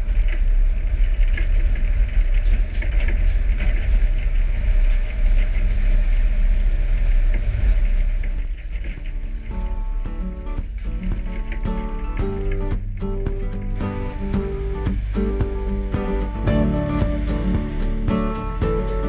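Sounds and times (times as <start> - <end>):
truck engine and road rumble: 0.0 - 19.0.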